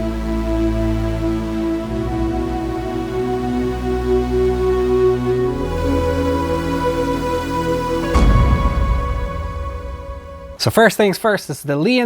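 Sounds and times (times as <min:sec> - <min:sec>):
background music with held tones: 0:00.0 - 0:11.1
deep bass hit: 0:07.7 - 0:10.6.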